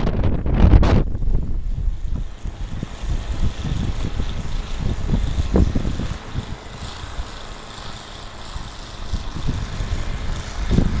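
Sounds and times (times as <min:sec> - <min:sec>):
engine running hum: 0:00.0 - 0:11.0
wind buffeting microphone: 0:00.0 - 0:11.0.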